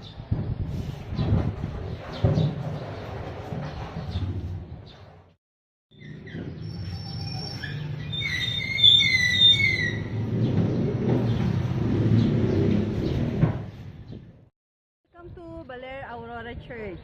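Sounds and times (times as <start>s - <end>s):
birds chirping: 5.9s - 14.3s.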